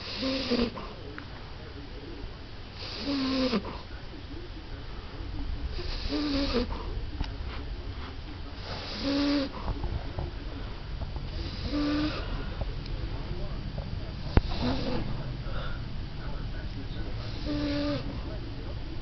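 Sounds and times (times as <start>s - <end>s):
dog snoring: 0.0s - 1.0s, 2.8s - 3.9s, 5.7s - 7.0s, 8.0s - 10.2s, 11.3s - 12.7s, 14.2s - 15.8s, 17.0s - 18.4s.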